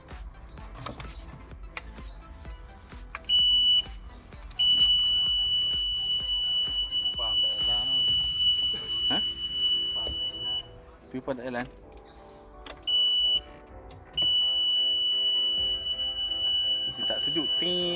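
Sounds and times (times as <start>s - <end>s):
boat engine alarm beeping: 2.0s - 11.0s, 12.6s - 17.9s.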